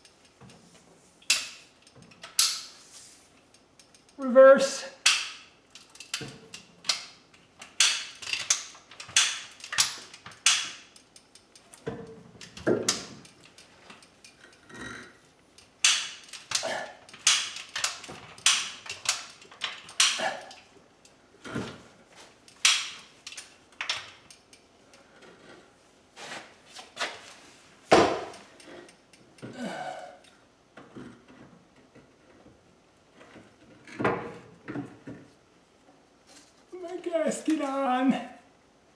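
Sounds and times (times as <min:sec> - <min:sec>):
chain hoist ratchet clicking and clanking: 0:00.0 - 0:02.8, 0:03.4 - 0:04.2, 0:05.0 - 0:21.2, 0:22.4 - 0:25.5.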